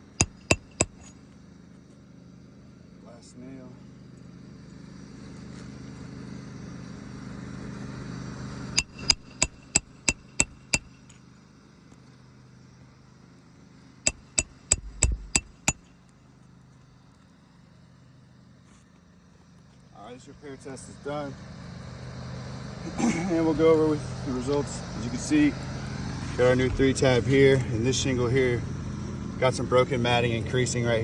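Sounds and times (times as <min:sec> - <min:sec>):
hammer striking metal tool: 0:00.0 - 0:01.1, 0:08.8 - 0:11.2, 0:14.1 - 0:15.9.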